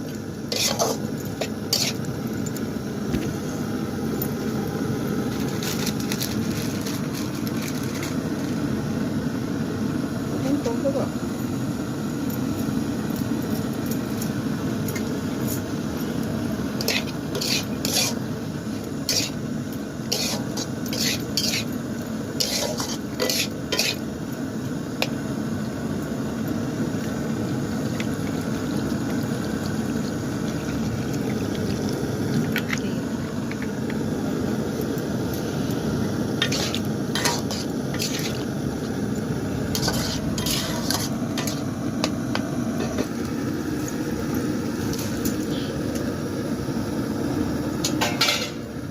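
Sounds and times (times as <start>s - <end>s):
metal spoon scraping a pan: 0.5s - 2.1s, 16.8s - 18.3s, 19.0s - 19.4s, 20.0s - 21.8s, 22.4s - 24.1s, 36.4s - 38.4s, 39.7s - 41.7s.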